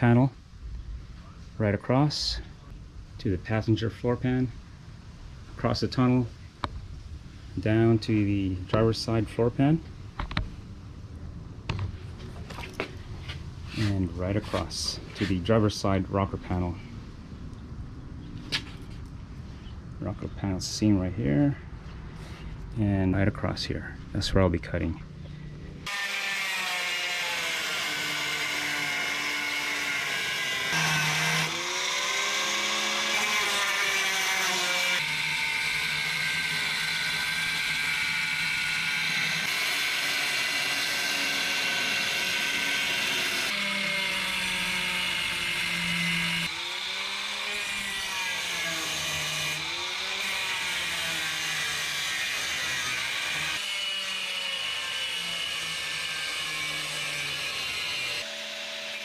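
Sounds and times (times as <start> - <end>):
power tool cutting sheet steel: 25.8 - 59.0.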